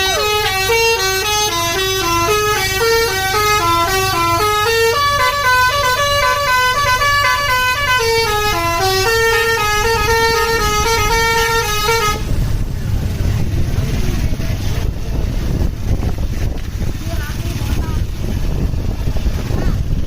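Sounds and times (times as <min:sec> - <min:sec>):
musical bus horn playing a tune: 0:00.0 - 0:12.4
low rumble: 0:05.2 - 0:20.0.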